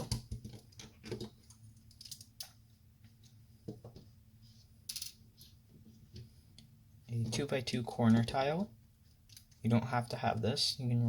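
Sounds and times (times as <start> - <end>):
plastic pieces clicking: 0.0 - 2.5.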